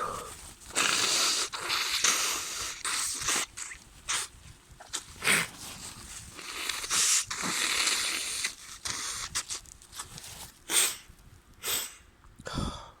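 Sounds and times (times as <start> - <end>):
person blowing nose: 0.0 - 4.3, 5.2 - 5.8, 6.4 - 9.7, 10.6 - 12.0
person sniffing: 0.0 - 4.3, 10.6 - 12.8
small clicks and rustles: 9.4 - 11.3.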